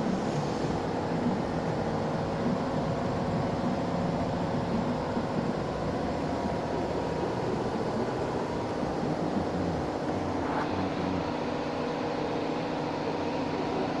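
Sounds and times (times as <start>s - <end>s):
motor running: 6.2s - 12.5s.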